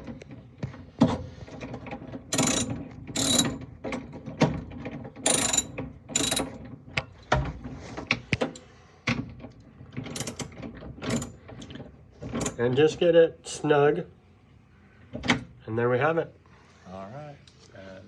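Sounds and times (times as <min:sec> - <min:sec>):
ratchet wrench clicking: 0:02.4 - 0:03.6, 0:05.3 - 0:06.5, 0:10.2 - 0:10.5.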